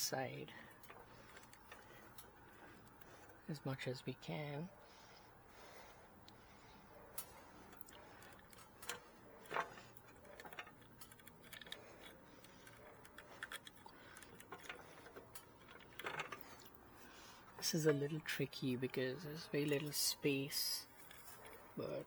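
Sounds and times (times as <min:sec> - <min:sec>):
wires clicking in electrical box: 0:00.6 - 0:03.4, 0:07.1 - 0:22.0.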